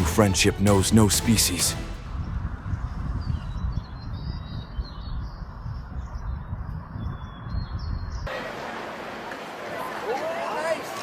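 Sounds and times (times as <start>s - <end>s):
small birds chirping: 2.2s - 8.3s.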